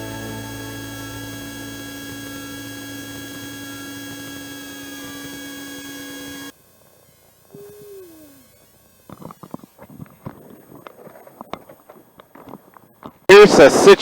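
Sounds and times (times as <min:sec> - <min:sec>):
music sustained chord: 0:00.0 - 0:03.2.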